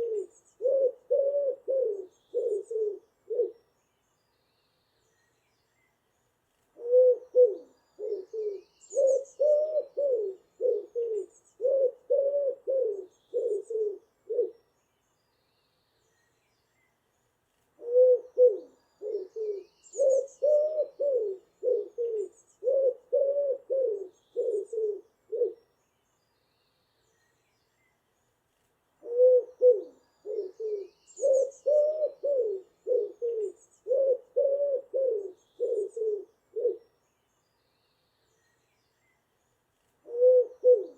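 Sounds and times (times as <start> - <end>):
pigeon cooing: 0.0 - 3.6, 6.8 - 14.6, 17.8 - 25.6, 29.0 - 36.8, 40.0 - 40.9
small birds chirping: 0.0 - 40.9.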